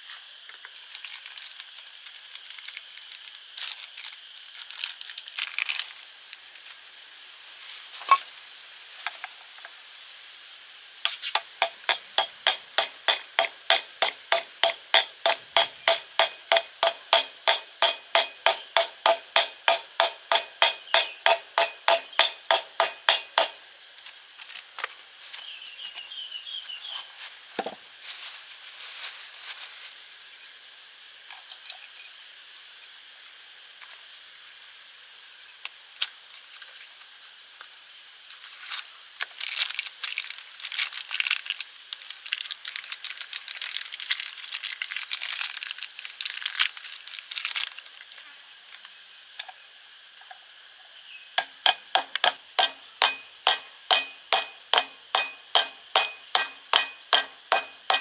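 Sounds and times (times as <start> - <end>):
hammer striking metal: 11.1 - 23.6, 51.4 - 58.0
tools clinking: 11.1 - 23.6, 51.4 - 58.0.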